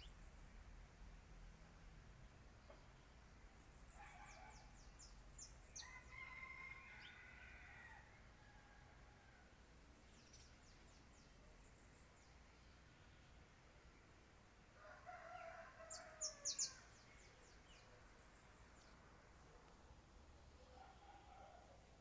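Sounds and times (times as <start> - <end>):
faint rooster crowing: 5.8 - 9.6, 14.7 - 17.0, 20.6 - 22.0
small birds chirping: 10.0 - 12.8.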